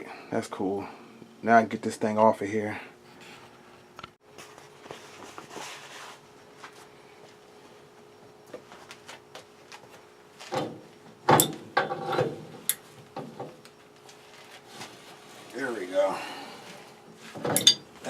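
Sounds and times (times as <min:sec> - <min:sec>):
wrench clanking on metal pipe: 0:17.5 - 0:17.9.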